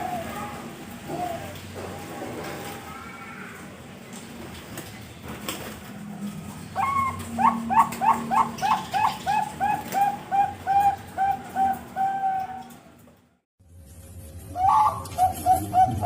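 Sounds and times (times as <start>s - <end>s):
dove cooing: 0.0s - 3.6s, 6.5s - 13.0s, 14.5s - 16.0s.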